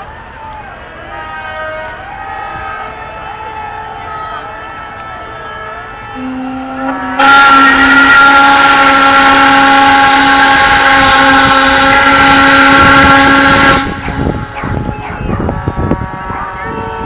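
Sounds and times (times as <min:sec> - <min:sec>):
boat whistle blast: 0:04.7 - 0:14.5.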